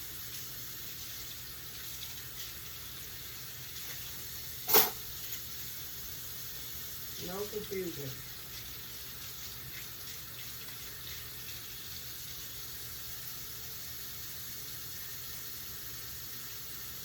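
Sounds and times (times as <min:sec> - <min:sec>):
tap running into a sink: 0:03.7 - 0:05.4
utensils clinking: 0:04.6 - 0:05.0.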